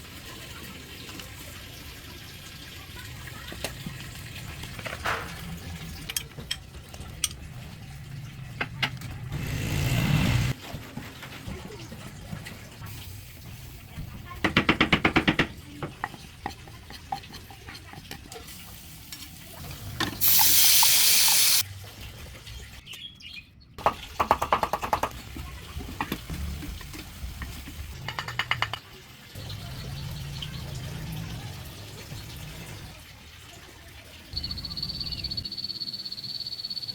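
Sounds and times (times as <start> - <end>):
water running hard: 15.1 - 21.6.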